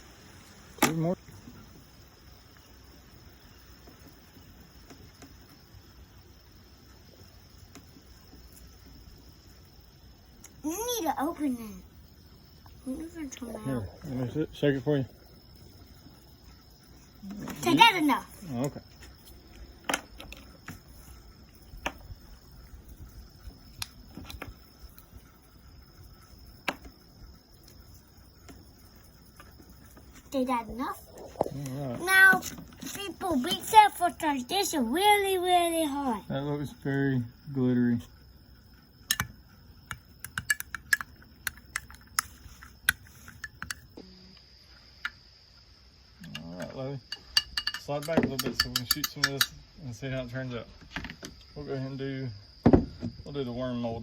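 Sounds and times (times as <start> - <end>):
crickets trilling: 0.0 - 54.0
sharp clicks and taps: 39.1 - 43.9
utensil tapping a cup: 47.1 - 49.5.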